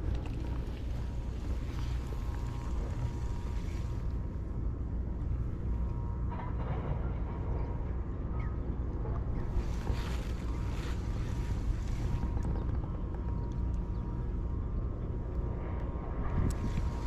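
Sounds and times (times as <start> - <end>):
wind buffeting the microphone: 8.9 - 17.0.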